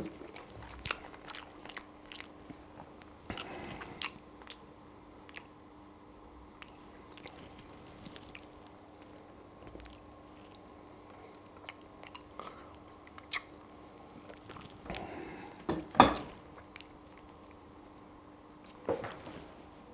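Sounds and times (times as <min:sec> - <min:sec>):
wet chewing clicks: 0:00.0 - 0:05.6, 0:06.6 - 0:15.1.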